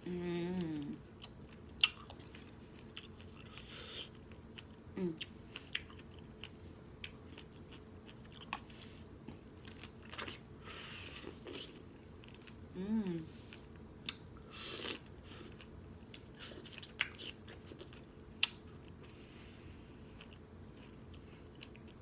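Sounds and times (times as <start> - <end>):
person humming: 0.0 - 1.0, 5.0 - 5.2, 12.8 - 13.4
person chewing wet smacking: 1.2 - 10.4, 14.0 - 19.1.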